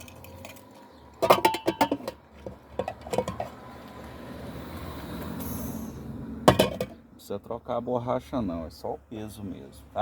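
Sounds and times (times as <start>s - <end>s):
pressure cooker parts clattering: 0.0s - 3.6s, 6.5s - 7.0s.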